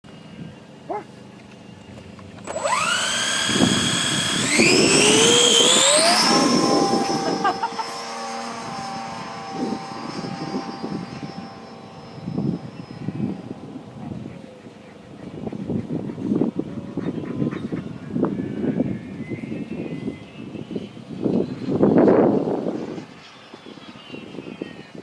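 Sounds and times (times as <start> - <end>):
electric motor and propeller whine: 0.1 - 24.0.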